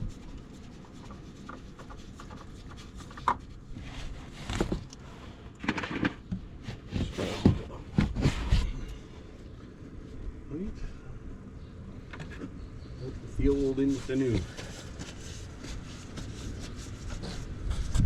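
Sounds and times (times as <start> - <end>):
rustling and rubbing: 0.0 - 8.8, 13.3 - 18.0.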